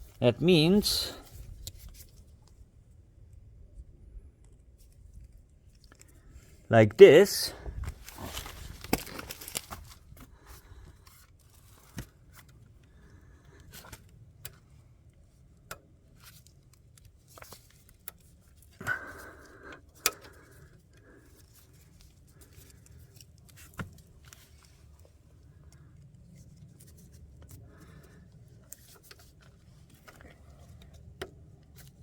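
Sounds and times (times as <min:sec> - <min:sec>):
light handling noises: 0:07.7 - 0:32.0.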